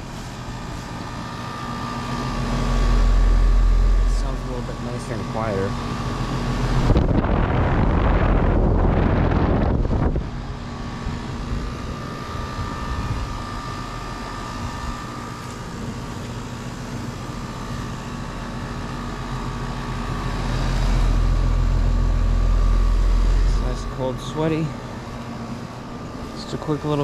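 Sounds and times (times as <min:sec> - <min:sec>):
heat pump whine and hum: 0:00.0 - 0:27.0
low rumble: 0:01.2 - 0:15.0, 0:19.4 - 0:26.0.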